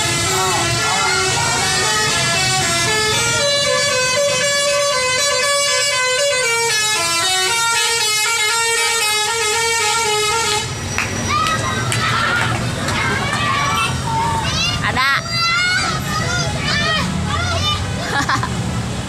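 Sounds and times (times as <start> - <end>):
musical bus air horn melody: 0.0 - 10.8.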